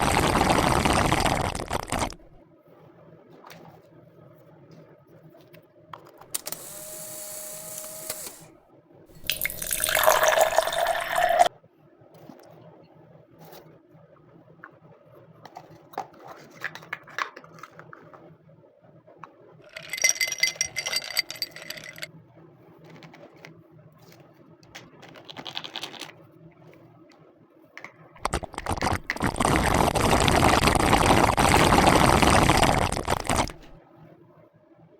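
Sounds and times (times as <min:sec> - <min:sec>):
plastic toy pieces clinking: 0:19.7 - 0:22.1.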